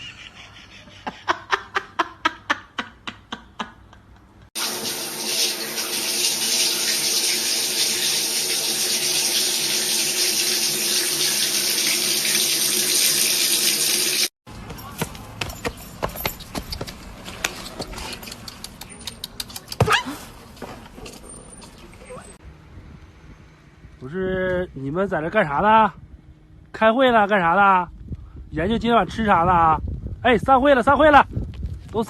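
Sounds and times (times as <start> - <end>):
tap water running into sink: 4.6 - 14.3.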